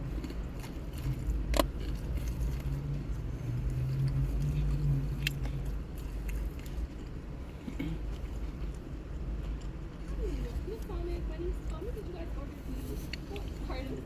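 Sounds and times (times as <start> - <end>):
chewing and biting food: 0.0 - 10.6
low rumble and hum: 0.0 - 14.0.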